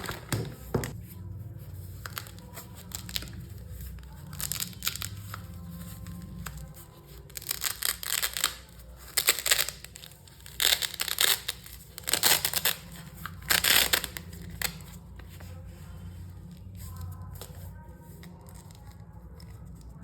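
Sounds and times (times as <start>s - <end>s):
packaging being torn open: 2.0s - 14.9s.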